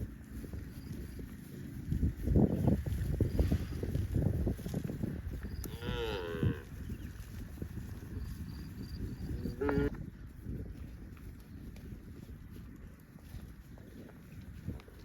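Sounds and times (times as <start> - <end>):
cow mooing: 5.6 - 6.7, 9.4 - 10.0.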